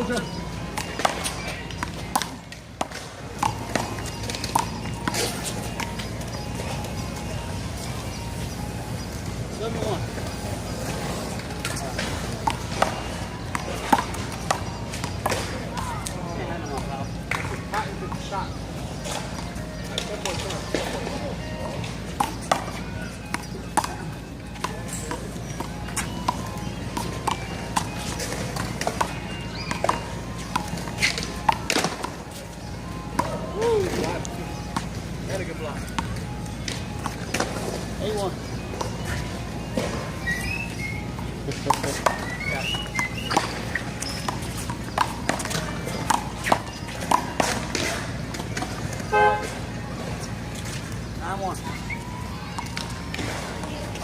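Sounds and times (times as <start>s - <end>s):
car horn toot: 49.1s - 49.6s.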